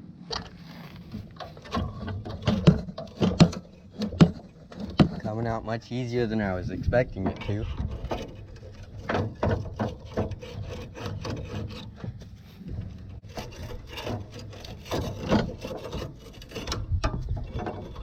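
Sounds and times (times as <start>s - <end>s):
rubber belt rubbing and scraping: 0.4s - 18.0s
scattered knocks: 1.5s - 5.3s, 7.2s - 12.2s.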